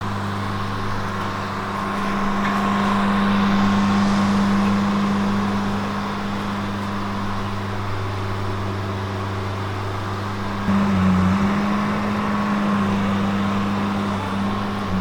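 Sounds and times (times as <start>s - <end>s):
band saw running: 0.0s - 15.0s.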